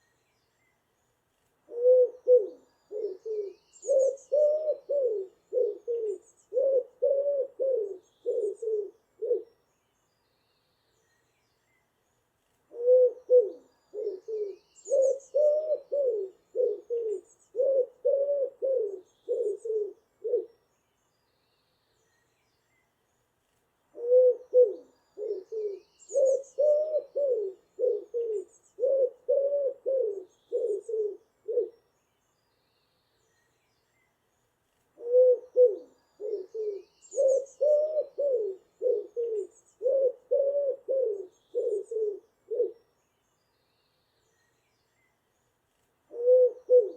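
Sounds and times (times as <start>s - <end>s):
faint high bird chirps: 0.0s - 23.3s, 24.0s - 46.9s
pigeon cooing: 1.7s - 9.5s, 12.7s - 20.5s, 24.0s - 31.7s, 35.0s - 42.8s, 46.1s - 46.9s.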